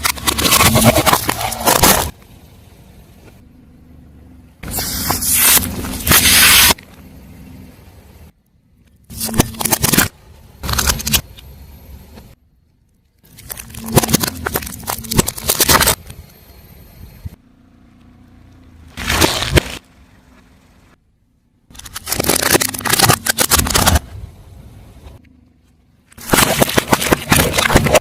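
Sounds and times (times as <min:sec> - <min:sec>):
tyre crushing crunchy objects: 0:00.0 - 0:02.2, 0:18.9 - 0:19.9, 0:21.7 - 0:24.1, 0:26.2 - 0:28.0.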